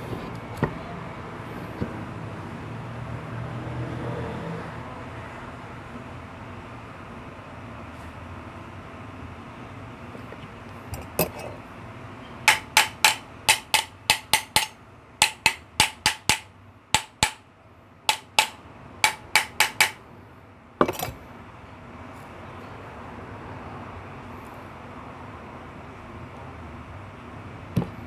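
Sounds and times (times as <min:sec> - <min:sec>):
hammer tapping on metal: 0:12.5 - 0:17.4, 0:18.1 - 0:20.0.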